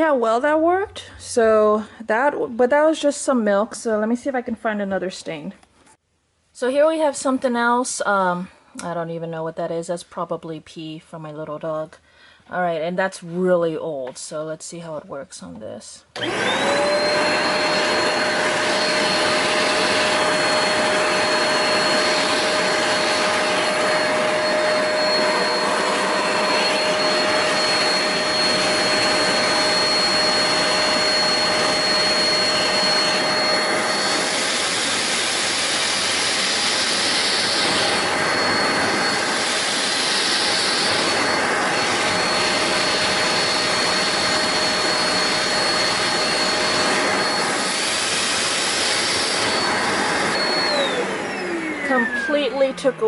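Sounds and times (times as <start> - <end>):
spot cleaner motor whine: 16.2 - 53.0.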